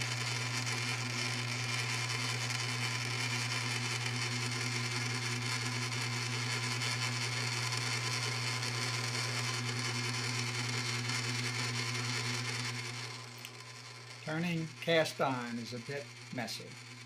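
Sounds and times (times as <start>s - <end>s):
lathe motor and gear hum: 0.0s - 17.0s.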